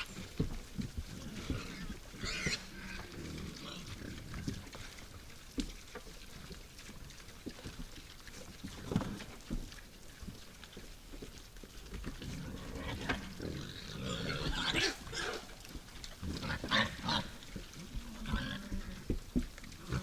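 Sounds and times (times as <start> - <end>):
wild boars grunting: 12.1 - 20.0.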